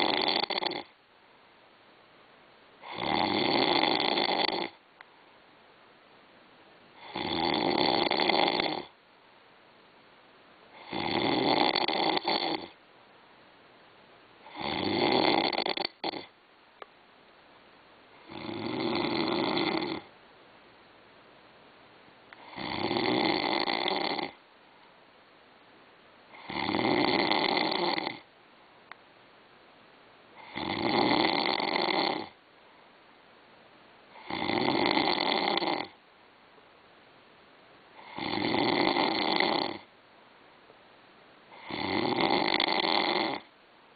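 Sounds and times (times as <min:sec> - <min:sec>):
person snoring heavily: 0:00.0 - 0:00.9, 0:02.8 - 0:04.8, 0:07.0 - 0:09.0, 0:10.7 - 0:12.8, 0:14.4 - 0:16.3, 0:18.2 - 0:20.1, 0:22.4 - 0:24.4, 0:26.3 - 0:28.3, 0:30.4 - 0:32.4, 0:34.1 - 0:36.0, 0:38.0 - 0:39.9, 0:41.5 - 0:43.5
quiet breaths: 0:00.0 - 0:43.9.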